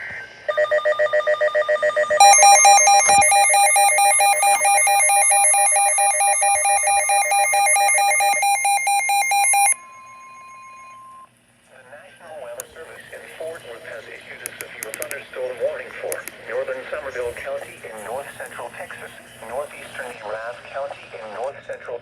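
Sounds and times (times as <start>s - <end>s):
electronic alert tone warbling: 2.2s - 11.0s.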